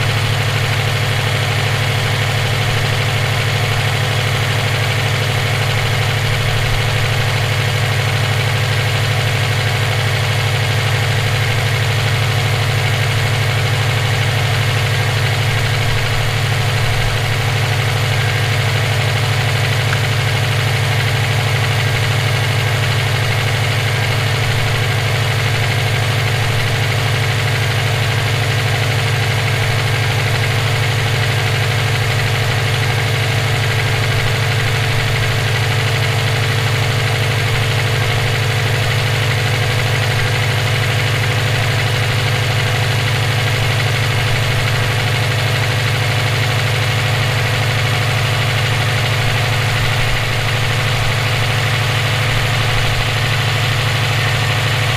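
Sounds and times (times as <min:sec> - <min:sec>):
car engine idling: 0:00.0 - 0:54.9
engine knocking noise: 0:00.0 - 0:54.9.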